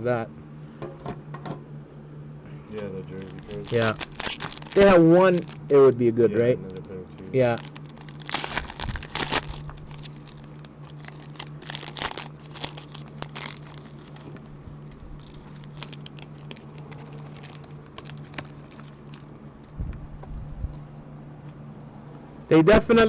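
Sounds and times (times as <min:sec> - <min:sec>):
low steady hum: 0:00.0 - 0:23.0
plastic packaging crinkling: 0:02.7 - 0:05.7, 0:06.6 - 0:19.8.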